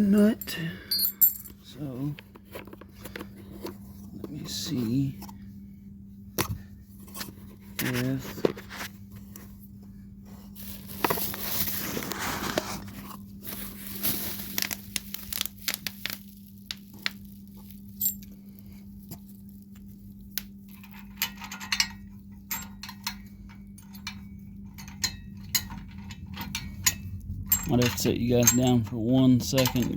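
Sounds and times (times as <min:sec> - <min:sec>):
steady low hum: 0:00.0 - 0:29.9
metal washers and bolt clicking: 0:00.2 - 0:01.6, 0:18.0 - 0:18.4, 0:20.7 - 0:29.9
rustling handling noise: 0:00.2 - 0:21.2.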